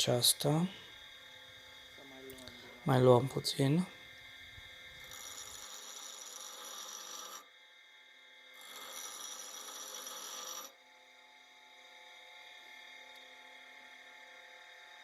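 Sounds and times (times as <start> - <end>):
drill bit grinding on abrasive: 4.4 - 7.7, 8.5 - 10.9.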